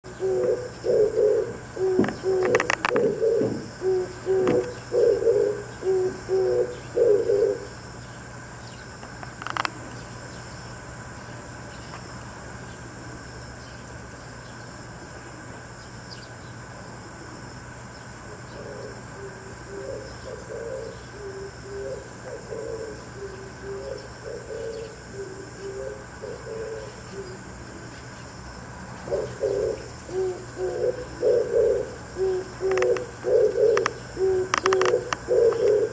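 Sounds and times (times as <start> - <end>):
distant dove cooing: 0.0 - 8.4, 16.6 - 35.9
dove loud rhythmic cooing: 0.0 - 35.9.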